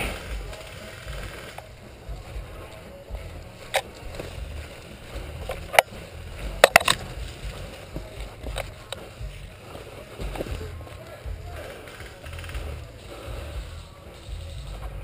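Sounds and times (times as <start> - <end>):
rumble of gear handling: 0.0 - 15.0
sharp snaps and clicks: 2.6 - 7.6.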